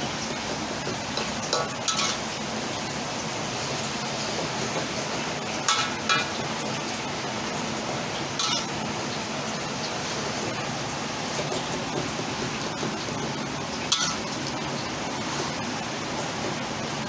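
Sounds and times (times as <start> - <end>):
food sizzling in a pan: 0.0 - 17.0
utensil clinking against pan: 1.2 - 2.2, 5.7 - 6.3, 8.4 - 8.7, 13.9 - 14.3.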